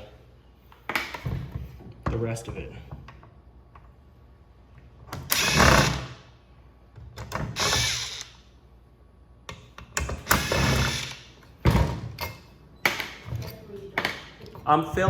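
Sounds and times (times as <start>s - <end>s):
impact driver bursts: 5.2s - 6.2s, 7.5s - 8.4s, 10.2s - 11.3s.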